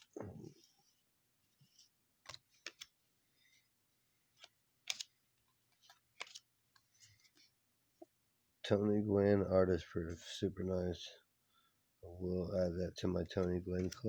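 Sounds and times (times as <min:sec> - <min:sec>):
trading cards flipped and set down: 0:00.0 - 0:03.6, 0:04.2 - 0:08.1, 0:13.4 - 0:14.0.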